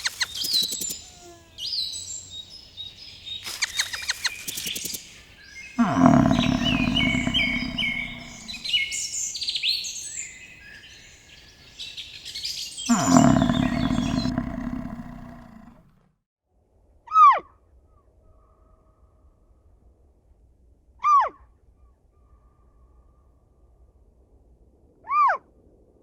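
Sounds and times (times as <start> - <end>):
small birds chirping: 0.0 - 15.8
long low animal calls: 5.8 - 9.0, 12.9 - 15.9.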